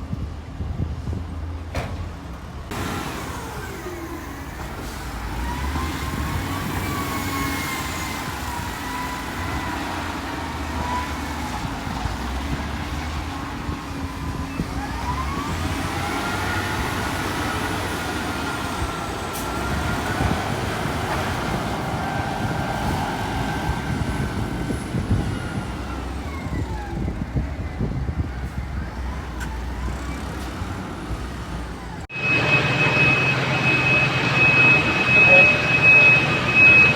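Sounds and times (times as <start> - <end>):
bulldozer diesel engine running: 2.4 - 36.9
high whine: 32.1 - 36.9.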